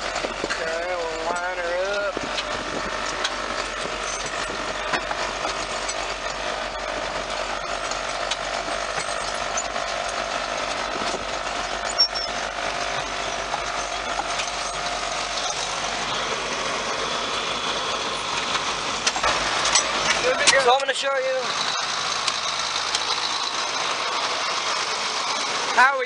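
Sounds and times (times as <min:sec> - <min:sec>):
tractor diesel engine running: 0:00.0 - 0:26.0.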